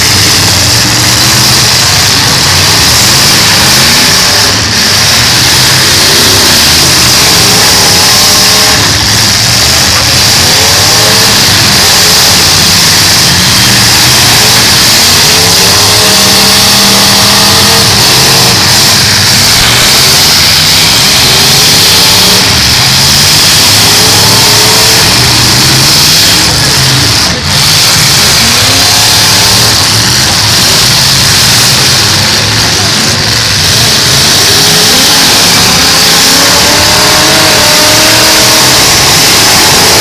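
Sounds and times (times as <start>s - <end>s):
car engines revving hard: 0.0s - 40.0s.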